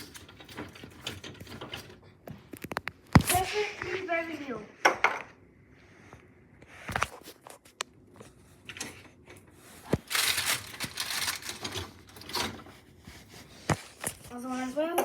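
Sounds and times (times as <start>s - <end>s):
packaging crinkling and rustling: 9.7s - 12.9s.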